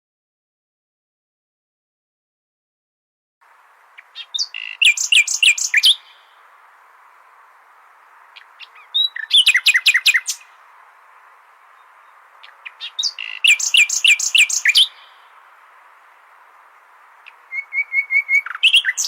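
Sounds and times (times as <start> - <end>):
nightingale singing: 3.4 - 19.0
steady background hiss: 3.4 - 19.0.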